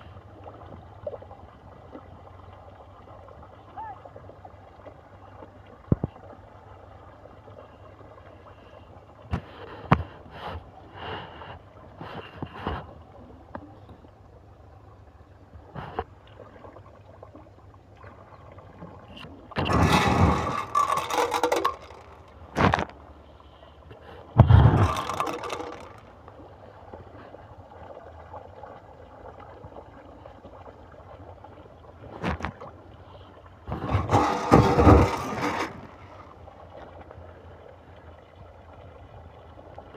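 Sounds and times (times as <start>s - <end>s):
water splashing: 15.7s - 23.3s, 24.0s - 39.9s.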